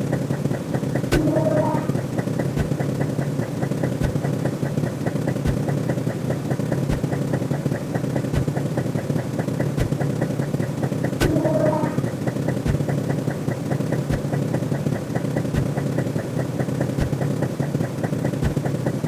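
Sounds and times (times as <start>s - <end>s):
rapid light ticking: 0.0s - 19.0s
electronic drone: 1.0s - 2.8s, 11.2s - 12.5s.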